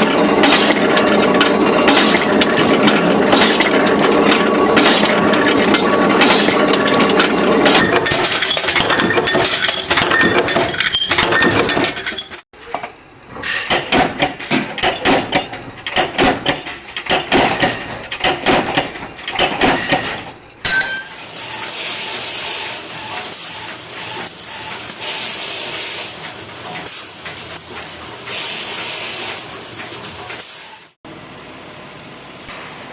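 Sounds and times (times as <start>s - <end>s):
dense clatter: 0.0s - 12.9s, 13.6s - 21.3s
sharp knocks and clinks: 7.8s - 13.0s, 13.6s - 21.3s.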